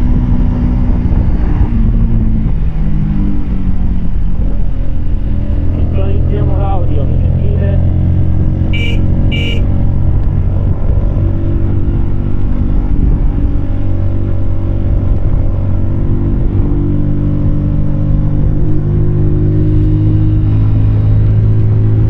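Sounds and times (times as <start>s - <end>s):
motorcycle engine running: 1.1s - 16.8s
short high beeps: 8.7s - 9.6s.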